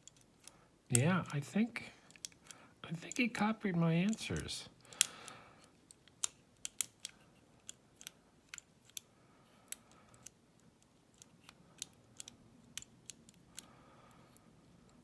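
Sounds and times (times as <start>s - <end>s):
lock picking metal clicks: 0.0s - 1.4s, 2.1s - 3.5s, 4.1s - 9.1s, 9.7s - 13.7s.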